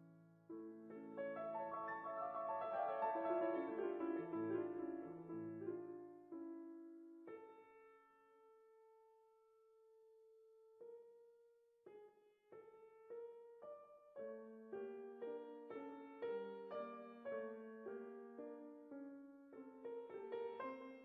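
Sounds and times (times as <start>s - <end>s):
quiet piano music: 0.0s - 21.0s.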